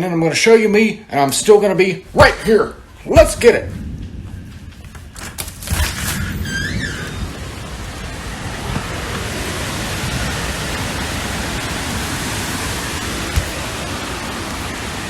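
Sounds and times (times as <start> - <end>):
rain hiss: 0.3 - 15.0
wind rumble: 1.4 - 15.0.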